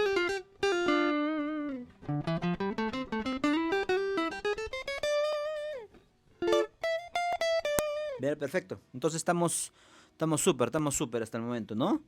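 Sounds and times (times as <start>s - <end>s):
electric guitar melody: 0.0s - 8.3s.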